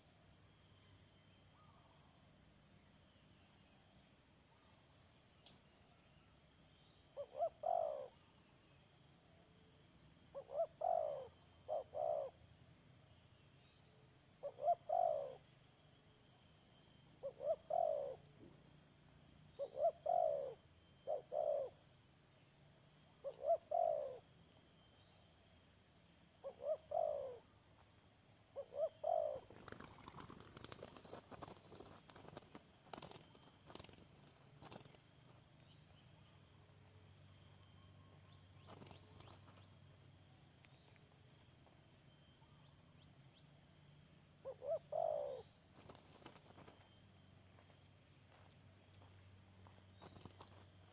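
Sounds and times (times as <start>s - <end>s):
dove cooing: 7.2s - 8.1s, 10.3s - 12.4s, 14.4s - 15.4s, 17.2s - 18.2s, 19.6s - 21.8s, 23.2s - 24.3s, 26.4s - 27.5s, 28.6s - 33.9s, 44.4s - 46.7s
crackling rustling noise: 29.6s - 34.8s.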